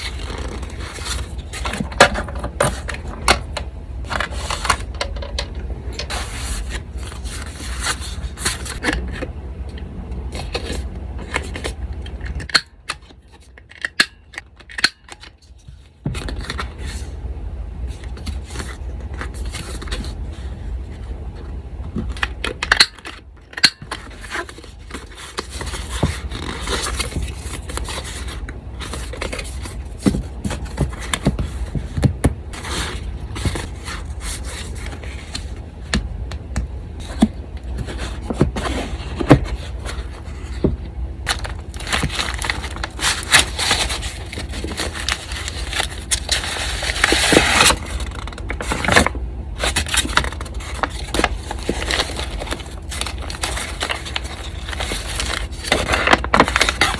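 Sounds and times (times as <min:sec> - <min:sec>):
paper rustling and crinkling: 0:00.0 - 0:03.1, 0:06.1 - 0:08.9, 0:15.3 - 0:17.2, 0:17.9 - 0:21.2, 0:23.8 - 0:36.0, 0:37.0 - 0:56.9
electric fan humming: 0:00.0 - 0:56.9.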